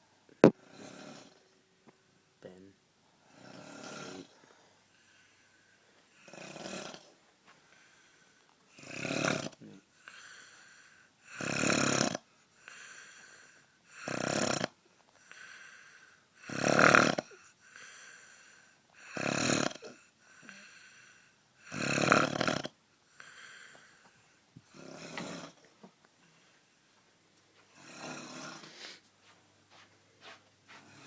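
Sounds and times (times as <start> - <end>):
quiet breaths: 0.0 - 31.0
man snoring loudly: 0.4 - 1.4, 3.3 - 4.4, 6.2 - 7.1, 8.8 - 10.3, 11.3 - 12.3, 13.9 - 14.8, 16.4 - 17.4, 19.0 - 20.9, 21.6 - 22.8, 24.7 - 25.6, 27.8 - 28.7.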